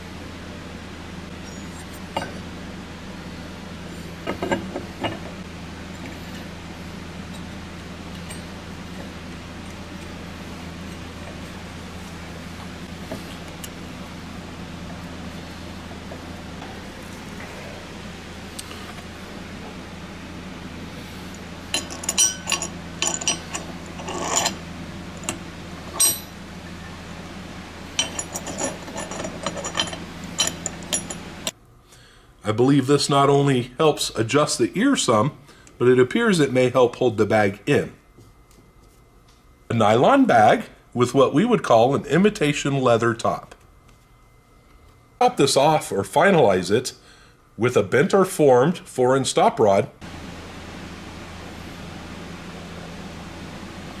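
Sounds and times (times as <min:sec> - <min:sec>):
low hum: 0:00.0 - 0:31.5
metal parts clicking and clinking: 0:21.7 - 0:24.6, 0:25.2 - 0:26.3, 0:28.0 - 0:31.5
light metallic clinks: 0:28.0 - 0:31.3.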